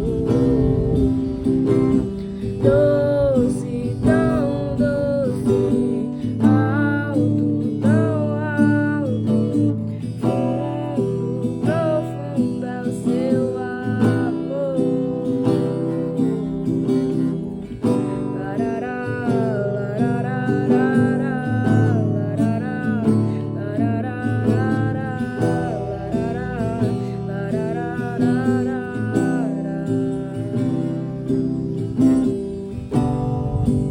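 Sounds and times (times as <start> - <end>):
acoustic guitar playing: 0.0 - 33.9.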